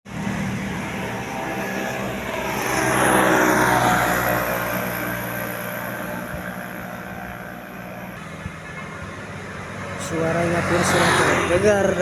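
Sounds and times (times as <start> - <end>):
bus driving past: 0.1 - 12.0.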